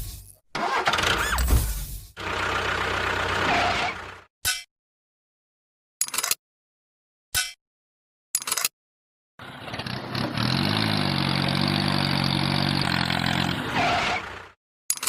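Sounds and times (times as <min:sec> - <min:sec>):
vehicle engine starting and running: 0:00.6 - 0:04.3, 0:09.4 - 0:14.6.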